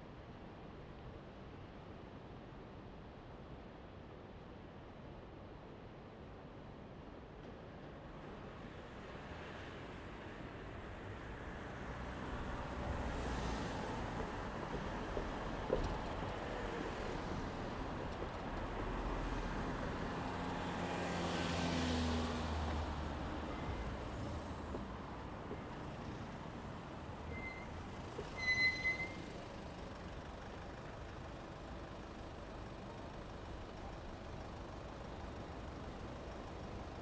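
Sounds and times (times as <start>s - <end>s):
road traffic: 10.6s - 37.0s
short high squeal: 27.3s - 29.3s.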